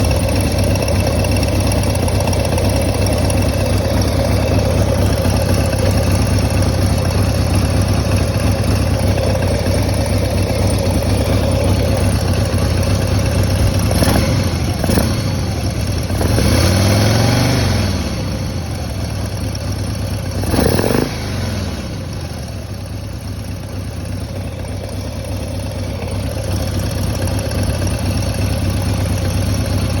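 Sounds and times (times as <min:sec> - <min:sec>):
motorcycle engine idling and revving: 0:00.0 - 0:30.0.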